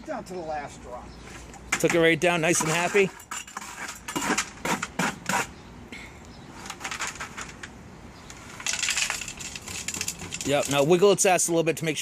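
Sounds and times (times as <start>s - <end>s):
gritty clicks and rattles: 1.4s - 5.5s, 6.6s - 11.2s.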